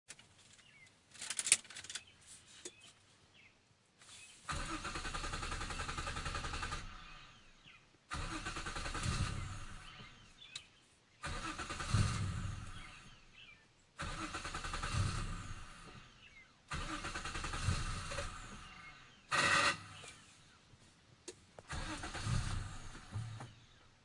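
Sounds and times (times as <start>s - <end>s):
starter cranking engine: 4.5s - 7.4s, 8.1s - 10.2s, 11.2s - 13.1s, 14.0s - 16.1s, 16.7s - 20.0s, 21.6s - 23.8s.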